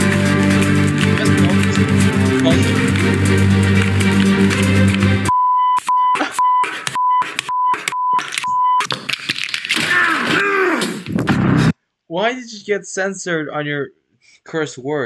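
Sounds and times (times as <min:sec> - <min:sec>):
music: 0:00.0 - 0:05.3
censor bleeps: 0:05.3 - 0:08.8.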